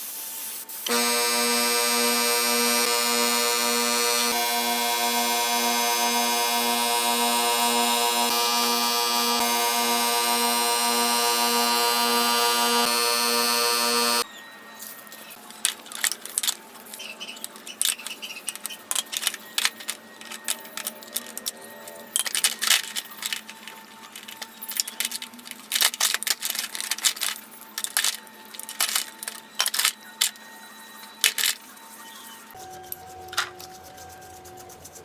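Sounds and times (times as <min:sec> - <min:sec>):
pulsing tone: 0:00.9 - 0:14.2
metal parts and tools clinking: 0:14.8 - 0:31.9.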